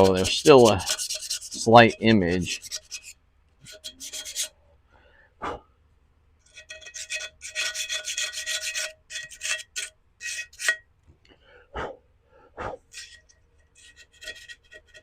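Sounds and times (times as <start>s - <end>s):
scraping tool rasping ceramic pot: 0.0s - 4.6s, 6.4s - 10.9s, 12.8s - 15.0s.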